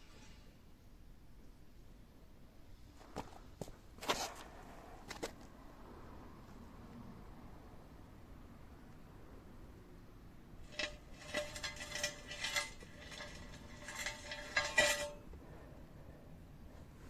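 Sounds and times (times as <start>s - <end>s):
steel pieces clinking and scraping: 10.6s - 15.4s.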